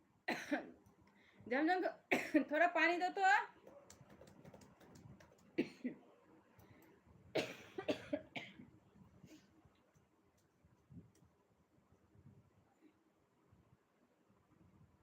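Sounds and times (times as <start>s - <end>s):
person coughing: 0.3s - 0.8s, 5.6s - 6.0s, 7.4s - 8.6s.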